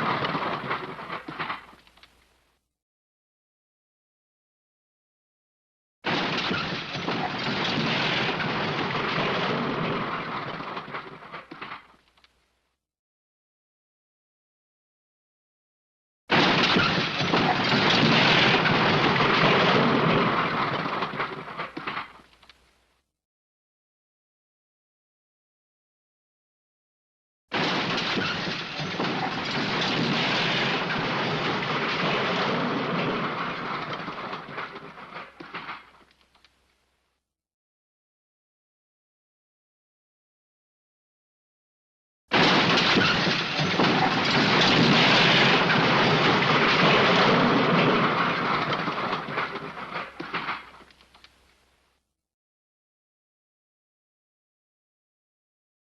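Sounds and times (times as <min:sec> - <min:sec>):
falling debris clatter: 0:00.0 - 0:02.3, 0:06.1 - 0:12.4, 0:16.3 - 0:22.8, 0:27.5 - 0:36.6, 0:42.3 - 0:51.6.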